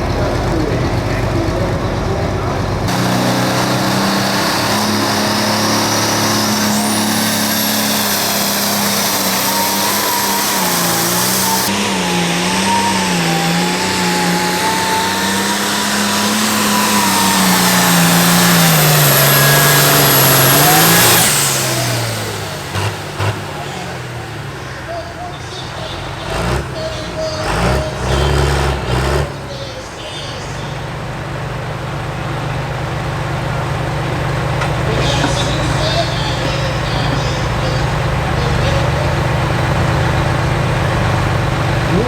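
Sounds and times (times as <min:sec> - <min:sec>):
tractor diesel engine under load: 0:00.0 - 0:42.0
high turbo whistle: 0:02.9 - 0:25.3.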